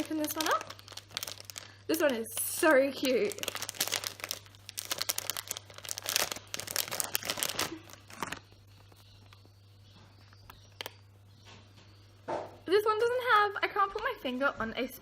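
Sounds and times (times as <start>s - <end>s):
packaging tearing and crinkling: 0.0s - 9.3s.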